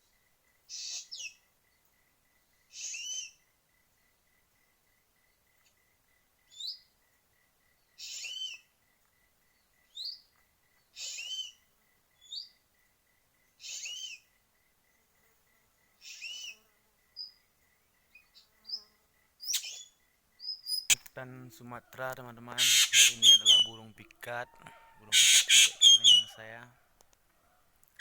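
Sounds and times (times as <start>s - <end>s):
sharp click: 20.9s - 21.2s
bird harsh rasping call: 22.5s - 23.9s, 24.5s - 26.6s.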